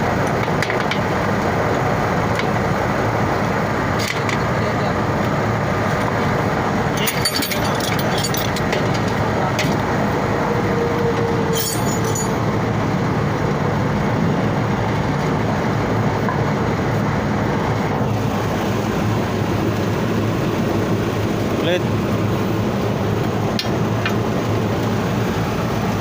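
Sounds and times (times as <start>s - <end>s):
machinery drone: 0.0s - 26.0s
light metallic clinks: 7.0s - 8.8s, 11.5s - 12.4s.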